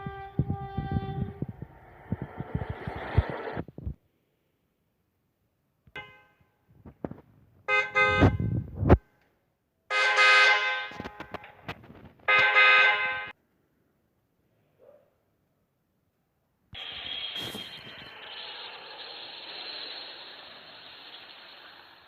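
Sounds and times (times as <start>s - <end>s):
vehicle horn honking: 0.0s - 1.5s, 6.0s - 6.4s, 7.7s - 8.6s, 9.9s - 11.3s, 12.3s - 13.4s
low rumble: 0.0s - 4.0s.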